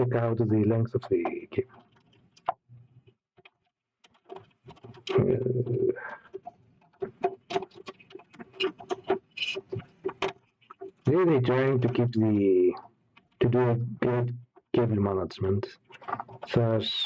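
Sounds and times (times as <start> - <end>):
cable plugs clicking and rattling: 3.4 - 13.6, 14.5 - 16.8.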